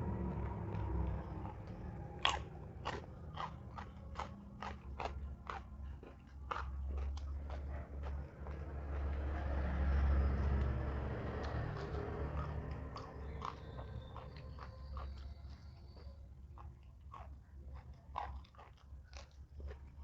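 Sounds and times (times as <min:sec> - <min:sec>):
soft chewing: 0:00.0 - 0:20.0
crunching bites of beans: 0:00.8 - 0:07.6.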